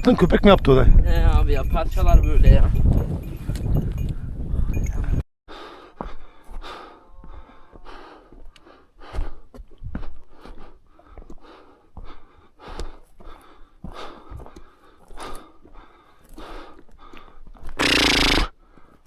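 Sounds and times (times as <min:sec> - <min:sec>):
person breathing hard: 0:05.5 - 0:19.0.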